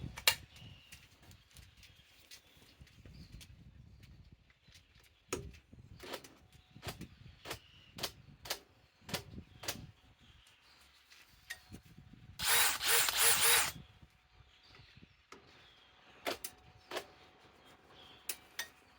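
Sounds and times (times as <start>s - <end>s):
sharp clicks: 12.4s - 13.7s
cordless drill running: 12.4s - 13.8s.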